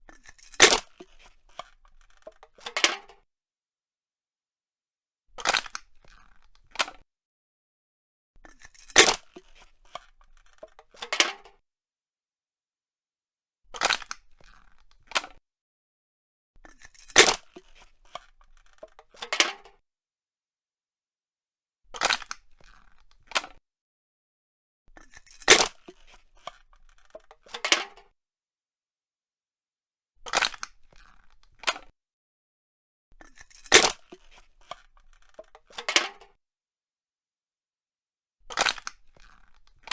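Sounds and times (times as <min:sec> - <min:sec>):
soda can being crushed: 0:00.6 - 0:00.9, 0:33.7 - 0:34.0.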